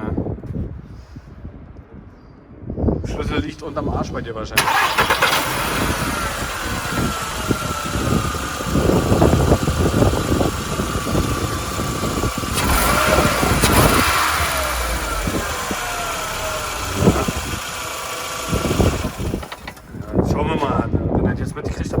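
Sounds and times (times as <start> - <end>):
car engine running with whine: 4.6 - 20.6.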